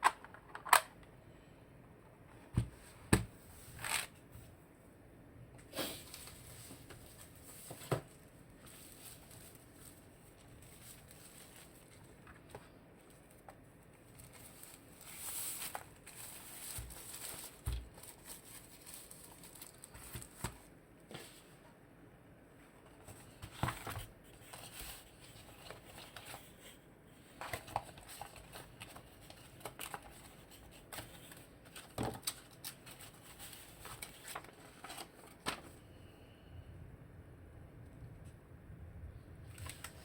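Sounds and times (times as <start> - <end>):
rustling: 5.7 - 21.6, 22.9 - 35.8.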